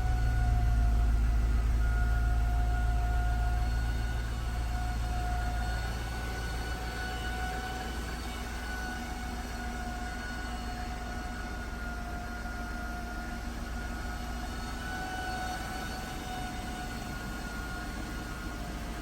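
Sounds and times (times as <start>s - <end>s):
low engine rumble: 0.0s - 6.8s
alternator high-pitched whine: 0.0s - 19.0s.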